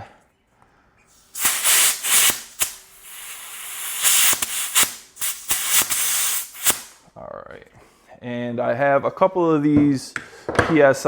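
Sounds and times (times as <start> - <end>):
air hissing into bicycle tire: 1.1 - 7.0.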